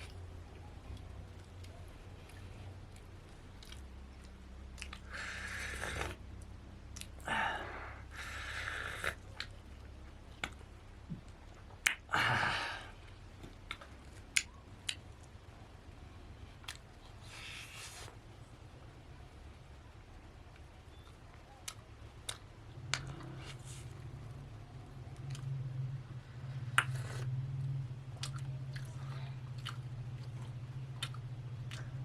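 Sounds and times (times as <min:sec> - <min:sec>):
person chewing and crunching: 0:00.9 - 0:06.2, 0:26.7 - 0:27.3, 0:28.2 - 0:32.0.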